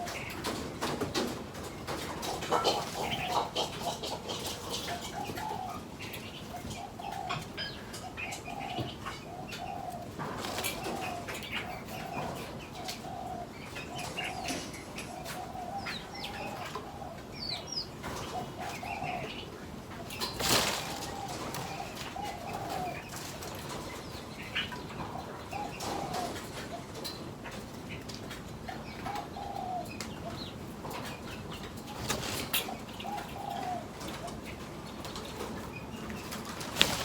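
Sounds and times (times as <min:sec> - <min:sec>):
birds chirping: 0:00.0 - 0:37.0
birds low repeated calls: 0:00.0 - 0:37.0
wing flutters: 0:20.0 - 0:24.1, 0:35.0 - 0:37.0
loud rustle: 0:36.3 - 0:37.0.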